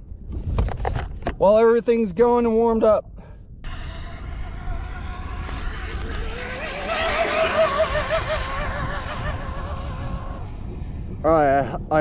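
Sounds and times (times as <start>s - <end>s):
low rumble: 3.0s - 12.0s
electric rc car motor whine: 3.7s - 11.1s.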